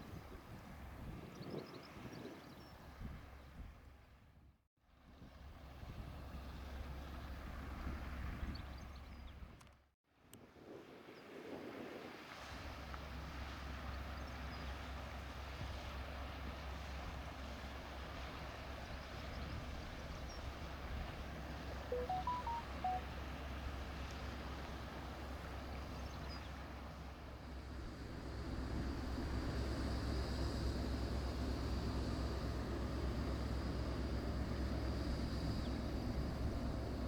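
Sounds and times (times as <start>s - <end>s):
wind on microphone: 0.0s - 3.8s
quick whistled notes: 21.9s - 23.0s.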